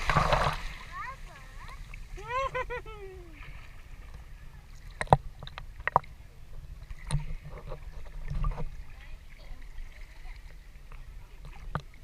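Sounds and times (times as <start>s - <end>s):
sea water sloshing with rumble: 0.0s - 12.0s.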